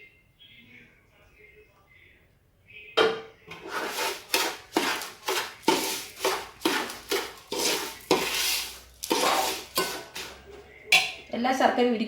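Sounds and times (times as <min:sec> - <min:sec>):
ladle scraping a cooking pot: 0:03.5 - 0:11.1.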